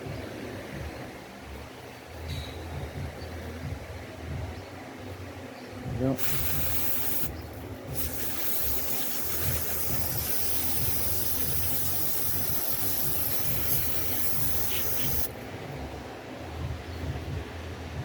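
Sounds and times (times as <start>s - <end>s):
aerosol can spraying: 6.2s - 15.3s.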